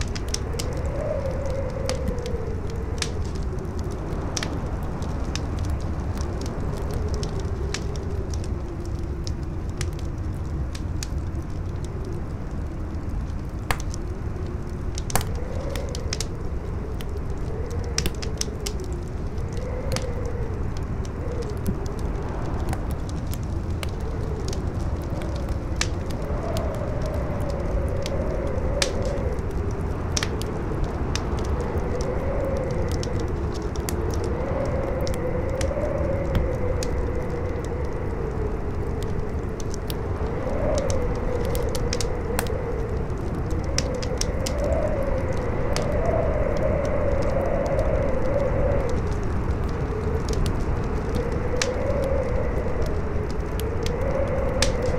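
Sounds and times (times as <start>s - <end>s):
campfire crackling and popping: 0.0s - 54.9s
howling wind: 0.0s - 54.9s.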